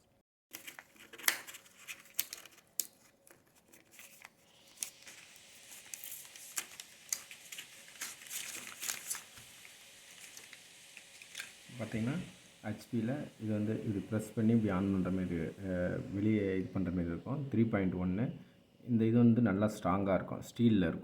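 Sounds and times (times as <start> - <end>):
plastic packaging crinkling and tearing: 0.5 - 11.7.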